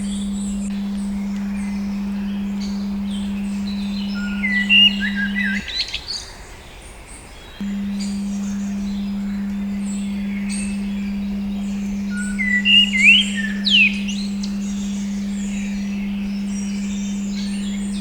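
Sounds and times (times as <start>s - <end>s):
steady pure tone: 0.0s - 5.9s, 7.6s - 18.0s
birds chirping and singing: 0.0s - 18.0s.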